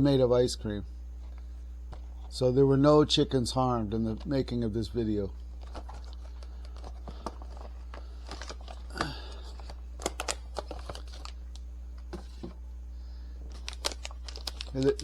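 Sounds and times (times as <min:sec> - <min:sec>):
steady low hum: 0:00.0 - 0:15.0
plastic wrapper crinkling: 0:05.5 - 0:11.6, 0:13.5 - 0:15.0.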